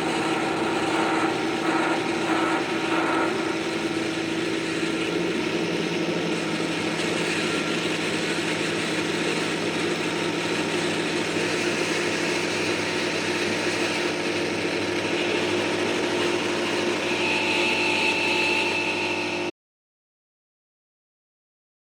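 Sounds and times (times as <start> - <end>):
high whistling tone: 0.0 - 5.4, 15.8 - 19.5
held low tone: 0.0 - 6.0
distorted noise drone: 0.0 - 19.5.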